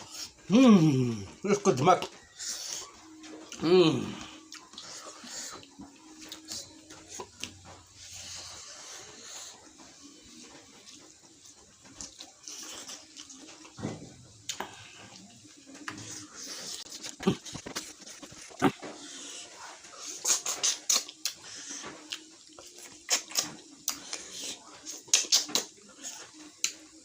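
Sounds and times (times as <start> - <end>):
person chewing and slurping: 12.0 - 13.8, 14.4 - 26.8
lip smacks and clicks: 20.2 - 21.4, 23.0 - 25.8.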